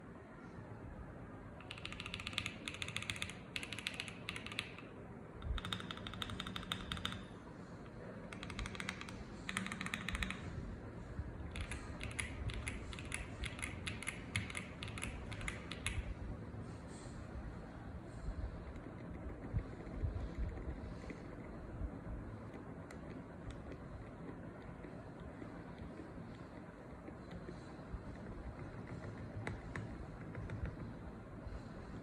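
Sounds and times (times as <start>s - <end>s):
mechanical keyboard typing: 1.6s - 7.4s, 8.3s - 10.5s, 11.4s - 16.1s.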